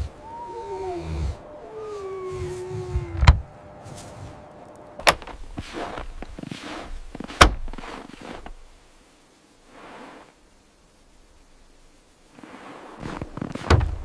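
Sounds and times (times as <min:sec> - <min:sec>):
thin falling whine: 0:00.0 - 0:05.3
faint rustling: 0:00.0 - 0:14.0.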